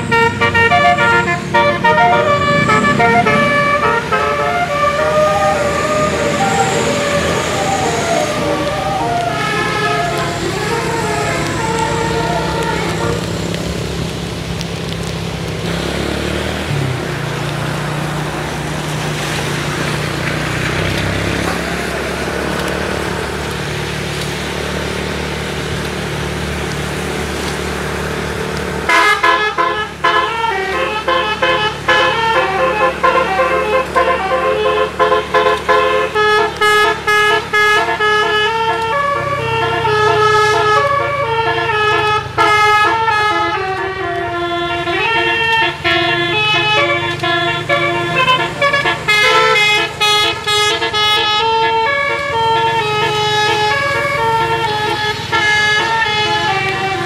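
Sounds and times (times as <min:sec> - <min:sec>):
multi-trumpet bus horn playing tune: 0:00.0 - 0:13.6, 0:28.8 - 0:57.0
bus engine running: 0:00.0 - 0:57.0.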